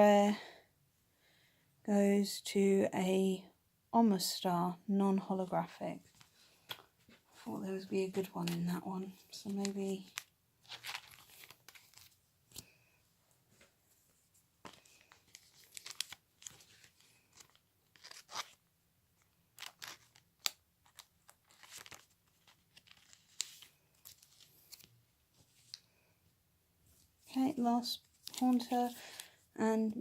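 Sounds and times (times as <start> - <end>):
foil wrapper crinkling: 9.5 - 12.2, 14.8 - 18.6, 19.6 - 24.9, 28.2 - 29.3.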